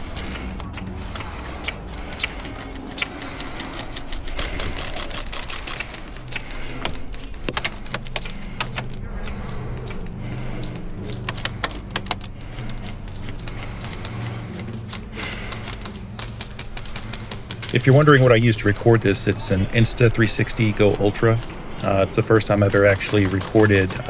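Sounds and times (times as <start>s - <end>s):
airsoft guns firing: 21.7s - 24.0s.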